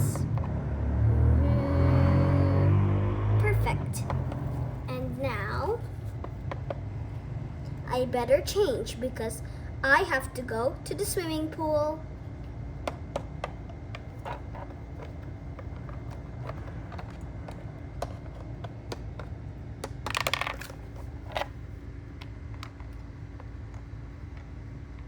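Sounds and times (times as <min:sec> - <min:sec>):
low hum: 0:00.0 - 0:25.0
plastic toys clicking: 0:13.4 - 0:21.5
plastic scrape: 0:20.0 - 0:21.6.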